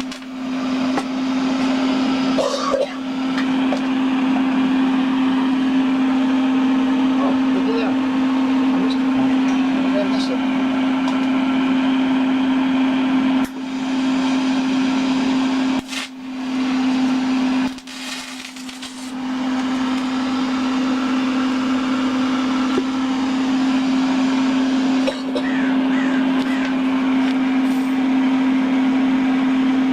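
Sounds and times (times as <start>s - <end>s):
power tool motor humming: 13.5s - 27.8s
grinding hiss: 17.6s - 20.8s.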